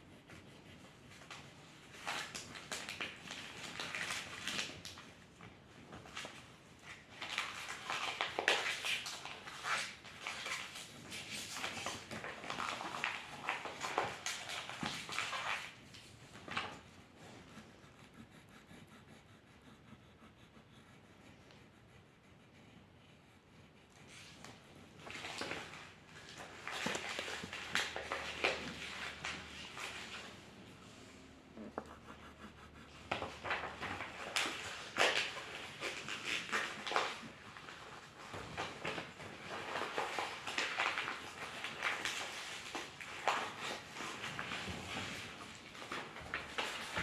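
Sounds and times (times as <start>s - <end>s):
pencil scribbling on paper: 0.0s - 1.3s, 17.4s - 24.8s, 31.6s - 34.2s.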